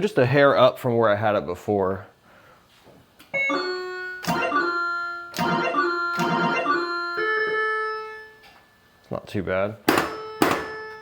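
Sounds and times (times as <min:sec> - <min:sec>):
organ-like electronic game tones: 0:03.4 - 0:08.4.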